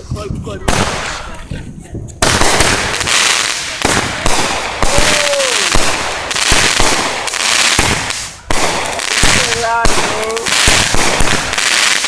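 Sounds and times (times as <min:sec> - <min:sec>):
fireworks cracking and popping: 0:00.0 - 0:12.0.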